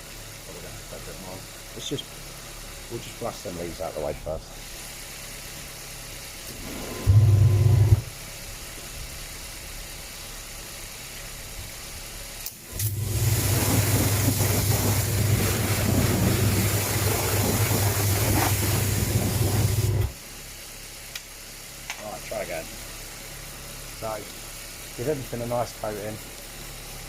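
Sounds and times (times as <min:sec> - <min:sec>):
car engine idling: 0:00.0 - 0:04.6
steam cleaner pump humming: 0:00.0 - 0:27.0
spray jet hissing: 0:04.5 - 0:20.8.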